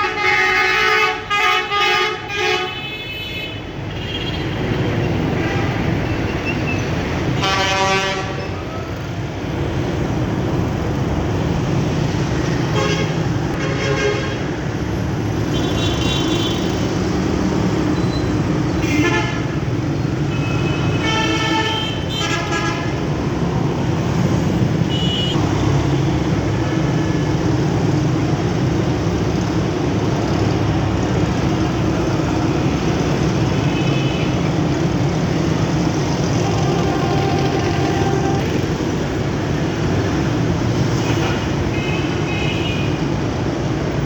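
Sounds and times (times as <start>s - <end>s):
bus horn blasts: 0.0s - 3.6s, 7.4s - 8.6s, 12.7s - 14.5s, 18.8s - 19.6s, 20.4s - 23.0s, 24.9s - 25.4s, 36.2s - 38.8s
road noise: 0.0s - 44.0s
bus engine running: 22.8s - 33.7s.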